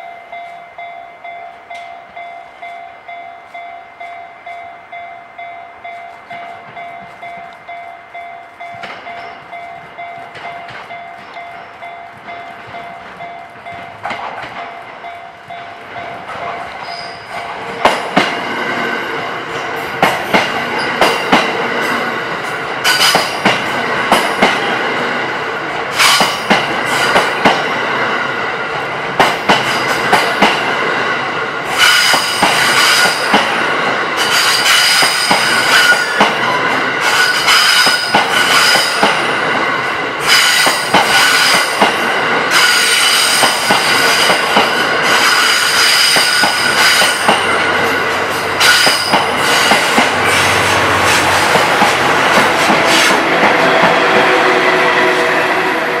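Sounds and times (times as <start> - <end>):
high squeal of wheels on rails: 8.6 - 14.8, 16.3 - 18.0, 19.5 - 24.5, 26.0 - 27.6, 29.5 - 30.5, 31.7 - 33.6, 34.2 - 39.5, 40.2 - 55.5
train wheels clacking over rail joints: 8.6 - 18.4, 19.6 - 24.8, 25.9 - 27.7, 29.2 - 30.8, 31.7 - 33.6, 34.2 - 39.4, 40.2 - 54.4.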